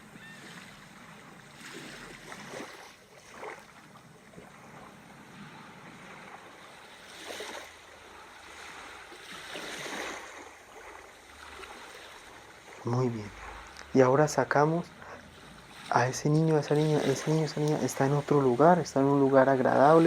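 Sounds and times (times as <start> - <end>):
ocean surf washing in: 4.3 - 20.0.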